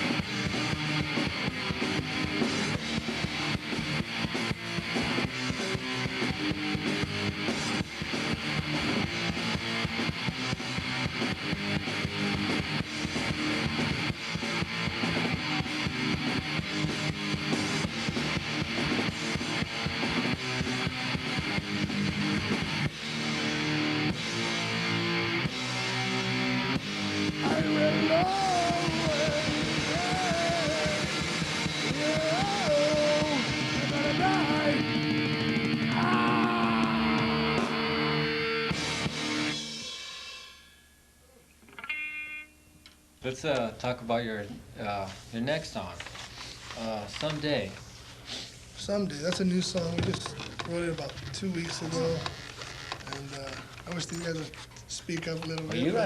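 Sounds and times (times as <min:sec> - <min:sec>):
rock band playing: 0:00.0 - 0:40.7.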